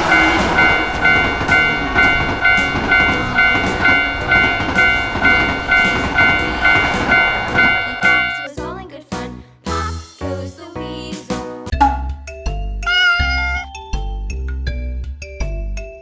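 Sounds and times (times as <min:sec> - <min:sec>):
railroad crossing bell ringing: 0:00.0 - 0:08.5
train rumbling past: 0:00.0 - 0:08.5.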